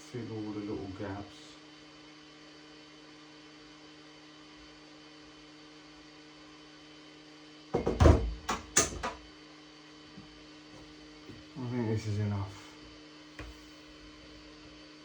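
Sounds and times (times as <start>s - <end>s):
loud knocks and clatter: 7.8s - 9.2s.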